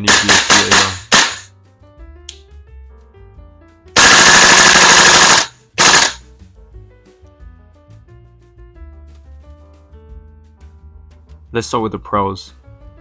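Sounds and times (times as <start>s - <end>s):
airsoft rifle automatic fire: 0.0s - 1.5s, 4.0s - 6.2s
airsoft rifle single shot: 0.0s - 1.5s, 4.0s - 6.2s.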